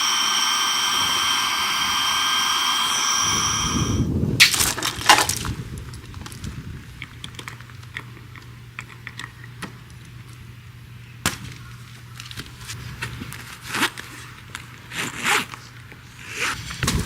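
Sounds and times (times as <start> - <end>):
steady low hum: 0.0 - 4.1.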